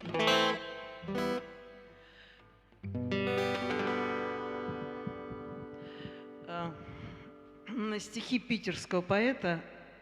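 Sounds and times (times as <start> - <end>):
acoustic guitar chords strummed: 2.8 - 7.6.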